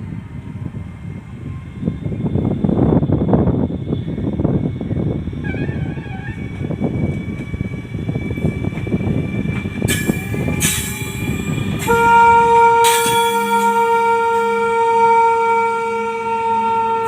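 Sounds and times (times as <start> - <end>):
freight train rumbling: 0.0 - 17.0
locomotive horn blast: 10.6 - 17.0.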